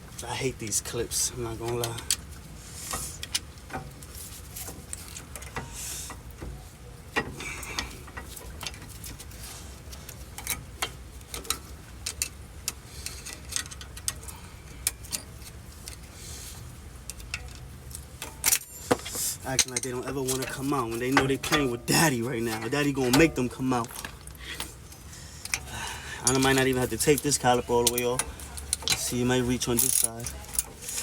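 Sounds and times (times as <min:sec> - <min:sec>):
hand tool clicking and scraping metal: 0:09.9 - 0:31.0.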